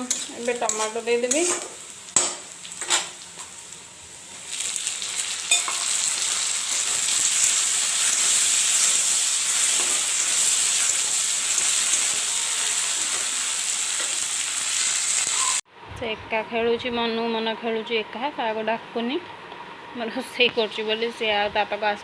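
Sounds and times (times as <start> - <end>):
tomatoes sizzling in oil: 0.0 - 15.6.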